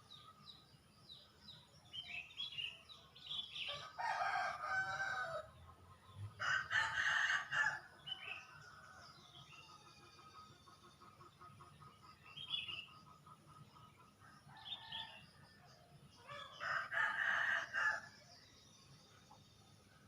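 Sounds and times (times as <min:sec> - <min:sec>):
rooster crowing: 0:03.7 - 0:05.5, 0:06.4 - 0:07.9, 0:16.3 - 0:18.1.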